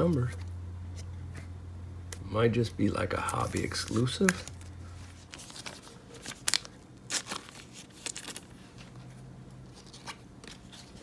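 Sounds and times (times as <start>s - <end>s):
card sliding into plastic sleeve: 3.2s - 4.7s
plastic crinkling: 3.2s - 9.0s.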